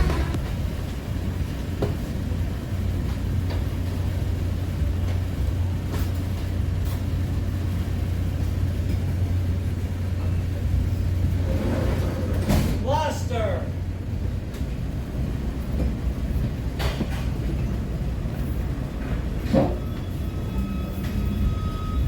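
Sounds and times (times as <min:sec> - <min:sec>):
moving vehicle rumble: 0:00.0 - 0:13.1.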